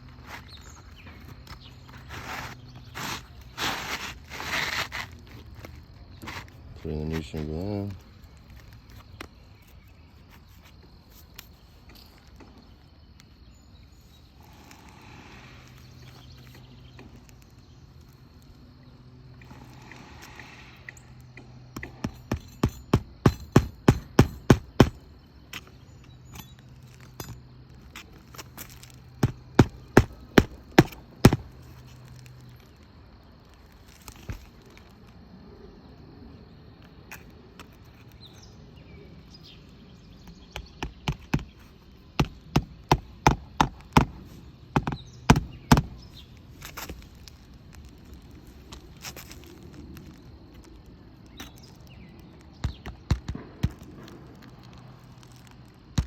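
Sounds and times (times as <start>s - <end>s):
hammer striking roofing nails: 21.8s - 25.1s, 29.2s - 31.6s, 40.6s - 46.0s, 52.6s - 53.9s.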